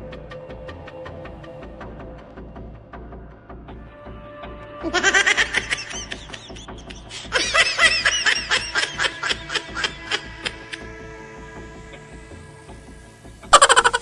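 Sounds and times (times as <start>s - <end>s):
faint background music: 0.0s - 14.0s
cartoon character snickering laugh: 4.9s - 10.2s, 13.5s - 14.0s.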